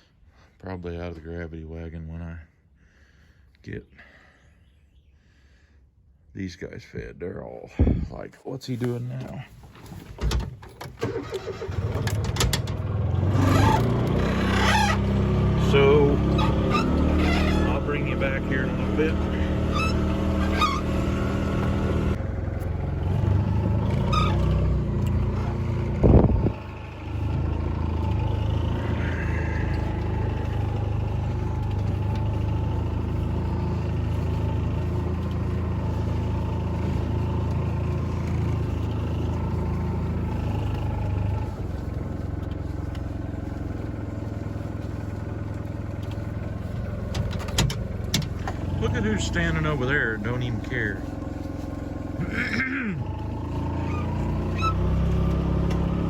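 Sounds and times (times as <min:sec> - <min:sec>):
farm vehicle engine running: 0:09.2 - 0:56.0.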